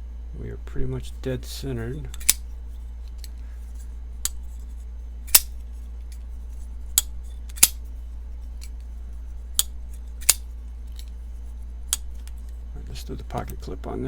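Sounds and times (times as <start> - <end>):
steady low hum: 0.0 - 14.0
folding knife blade clicking: 2.1 - 2.4, 5.3 - 6.2, 7.0 - 7.8, 9.6 - 11.2.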